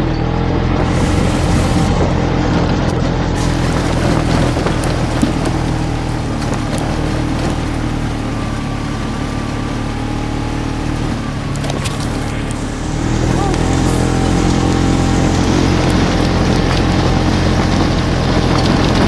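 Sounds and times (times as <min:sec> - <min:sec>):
off-road vehicle engine running: 0:00.6 - 0:19.0
wind and terrain rushing: 0:00.7 - 0:04.8.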